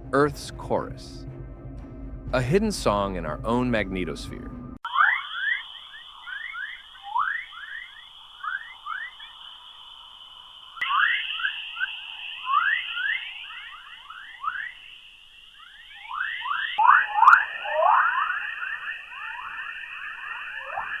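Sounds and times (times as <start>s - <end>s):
rapid rising chirps: 4.6s - 21.0s
steady high hiss: 4.9s - 21.0s.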